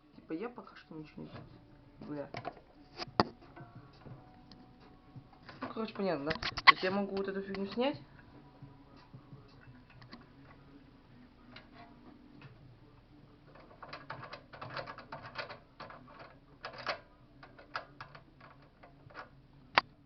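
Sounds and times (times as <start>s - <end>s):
metal parts clicking and rattling: 13.5s - 19.4s.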